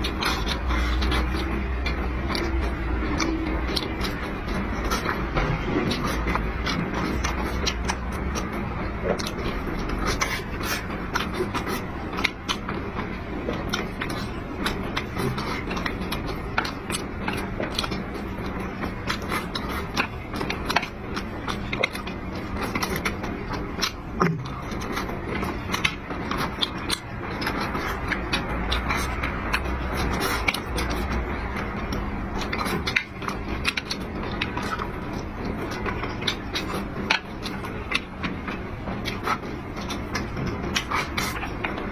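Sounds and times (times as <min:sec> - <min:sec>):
busy eatery hum: 0:00.0 - 0:41.9.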